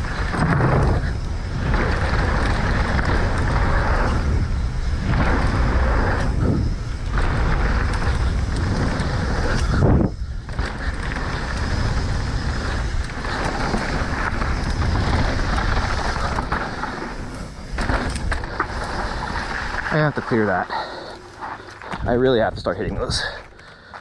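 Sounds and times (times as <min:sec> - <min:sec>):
wind rush on microphone: 0:00.0 - 0:20.4, 0:21.8 - 0:23.4
bike jolt: 0:00.0 - 0:22.1
bike tyre and drivetrain noise: 0:00.0 - 0:24.0.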